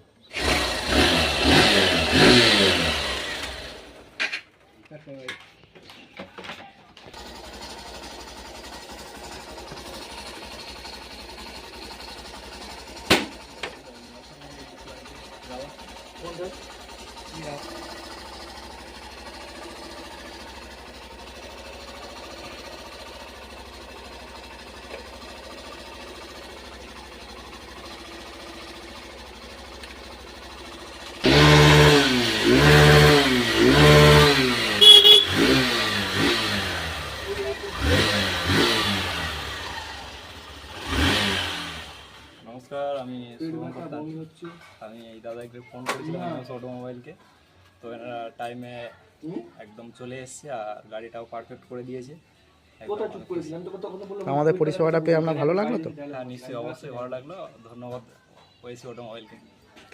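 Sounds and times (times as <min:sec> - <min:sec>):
motorcycle engine idling: 0:07.1 - 0:42.5
short high beep: 0:34.8 - 0:35.5.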